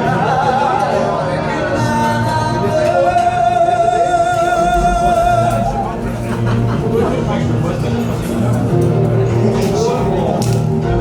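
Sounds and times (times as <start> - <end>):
person singing with vibrato: 0.0 - 6.1
backing music: 0.0 - 11.0.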